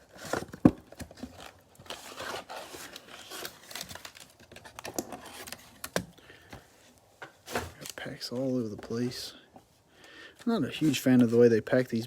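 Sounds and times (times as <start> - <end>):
plastic wrap crinkling and tearing: 0.0 - 6.1
cardboard and foil packs rustling: 0.0 - 9.3.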